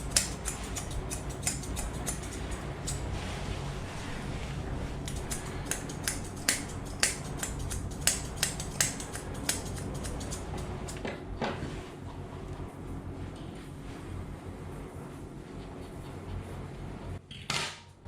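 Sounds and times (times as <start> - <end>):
scissors snipping fur: 0.0 - 3.1, 5.0 - 11.0
steady low hum: 0.0 - 17.3.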